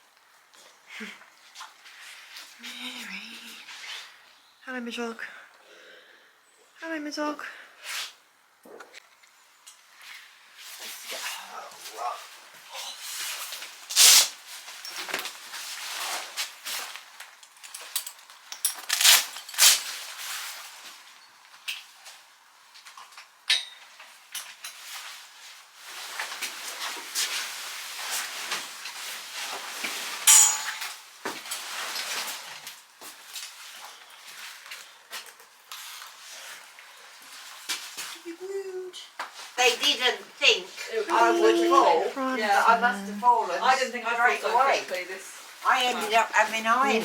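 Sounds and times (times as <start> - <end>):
metal buckles clinking and rattling: 17.4 - 19.7
fabric rustling: 18.9 - 22.3, 24.8 - 35.0.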